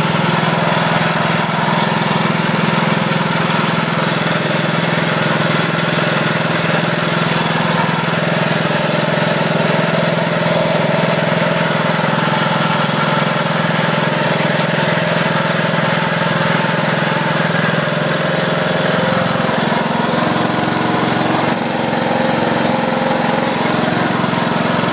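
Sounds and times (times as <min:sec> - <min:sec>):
lawn mower engine idling: 0:00.0 - 0:24.9.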